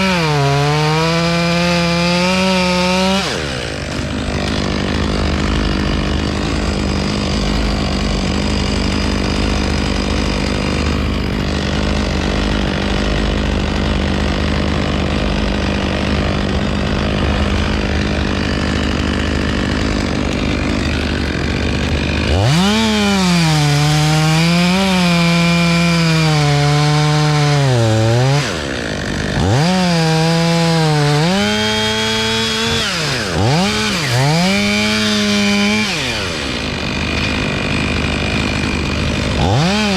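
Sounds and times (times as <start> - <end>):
closer chainsaw bogging in wood: 0.0 - 14.2
chainsaw at high revs: 0.0 - 39.9.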